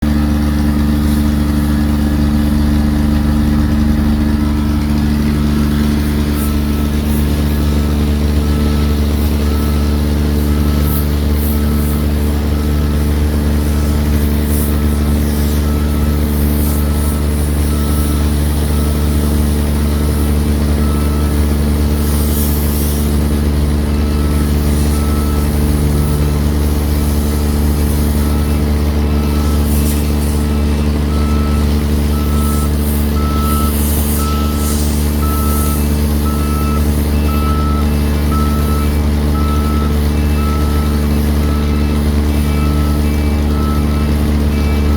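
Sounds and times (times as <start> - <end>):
excavator diesel engine running: 0.0 - 44.9
short alarm beeps: 31.1 - 44.2.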